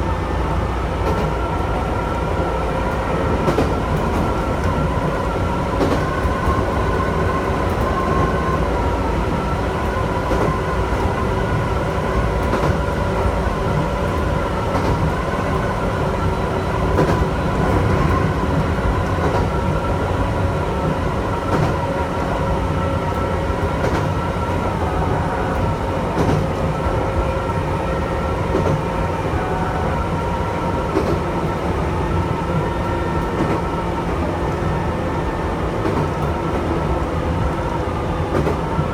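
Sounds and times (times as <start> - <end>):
train wheels rumbling on rail: 0.0 - 38.9.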